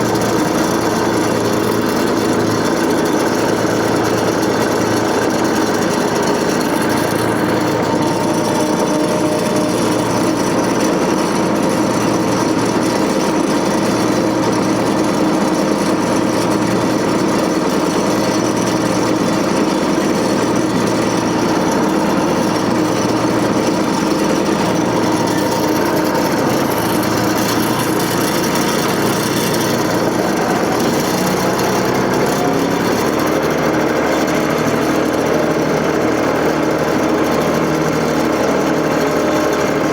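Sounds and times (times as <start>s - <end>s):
tractor engine running steadily: 0.0s - 39.9s.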